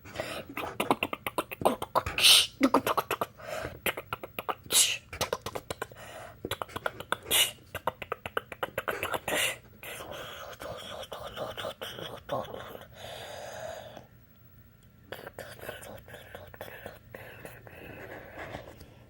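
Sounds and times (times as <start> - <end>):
person beatboxing: 0.5 - 12.9.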